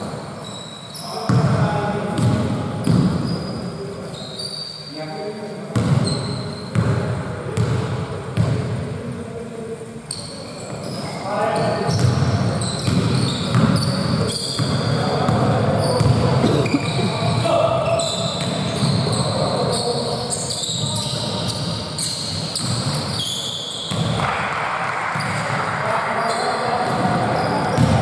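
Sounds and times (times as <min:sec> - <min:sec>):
basketball bouncing on court: 0:01.3 - 0:01.6, 0:02.2 - 0:03.5, 0:05.7 - 0:08.8, 0:11.9 - 0:17.5, 0:18.2 - 0:19.4, 0:22.3 - 0:23.2, 0:23.8 - 0:25.6, 0:26.8 - 0:28.0.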